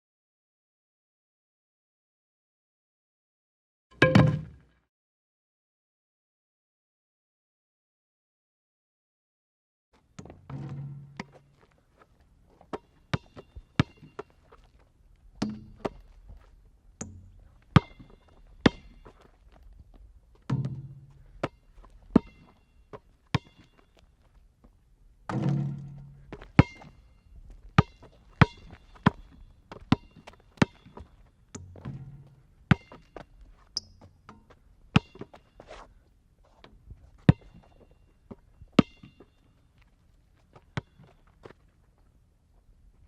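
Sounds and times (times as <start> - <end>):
objects knocking and clunking: 4.0 - 4.7.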